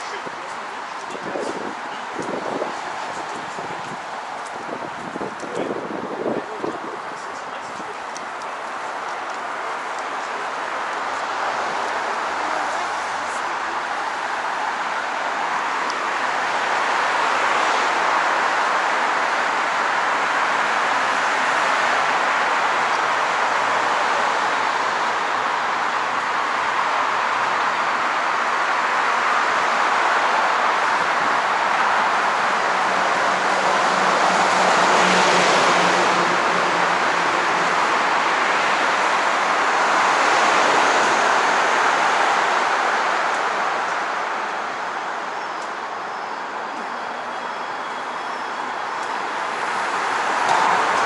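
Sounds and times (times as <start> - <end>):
car tyres rushing past: 0.0 - 46.1, 48.2 - 51.0.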